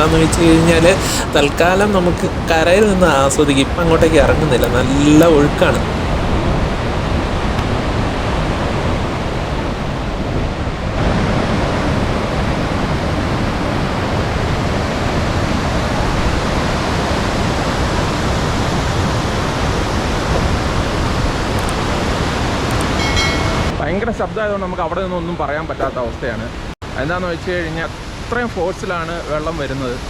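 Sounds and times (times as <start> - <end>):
waterfall rushing: 0.0 - 23.8.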